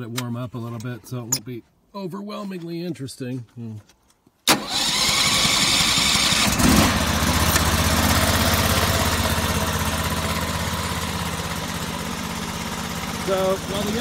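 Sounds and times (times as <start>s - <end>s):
sawmill engine running: 4.6s - 14.0s.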